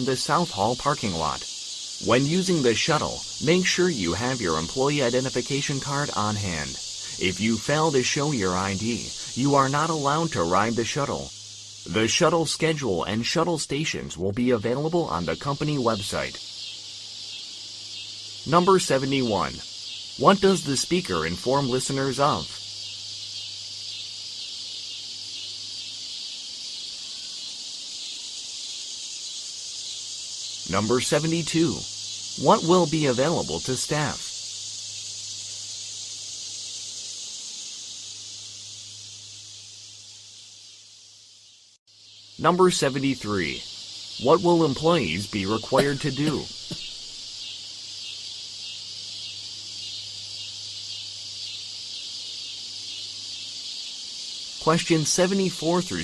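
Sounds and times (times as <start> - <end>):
high-pitched hiss: 0.0 - 56.0.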